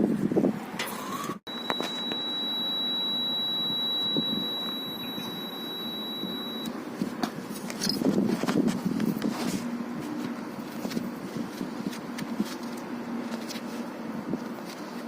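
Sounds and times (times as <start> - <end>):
continuity buzzer high beep: 1.5 - 6.7
low background hum: 1.5 - 15.0.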